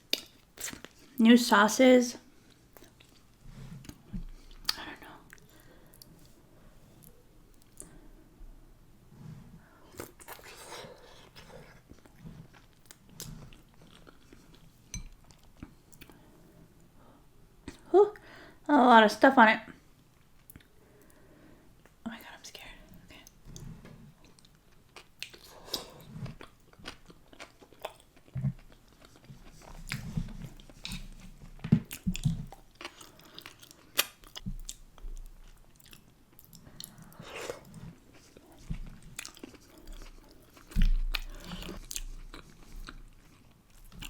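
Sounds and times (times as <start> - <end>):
person chewing food: 0.0 - 1.2, 2.5 - 8.1, 9.8 - 16.5, 20.2 - 21.2, 23.5 - 44.0.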